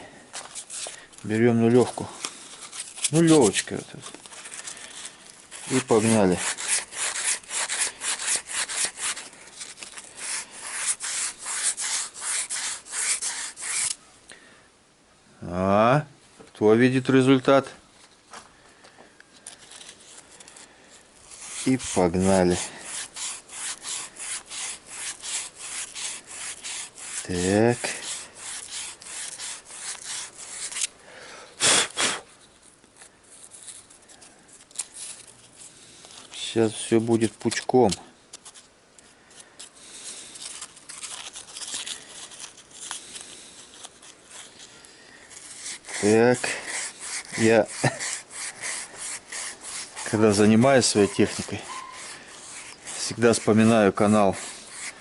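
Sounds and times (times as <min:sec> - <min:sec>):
sandpaper rasping on metal: 0:02.6 - 0:03.8, 0:04.4 - 0:14.0, 0:21.2 - 0:30.9, 0:45.3 - 0:55.0
short loud hiss: 0:31.6 - 0:32.4.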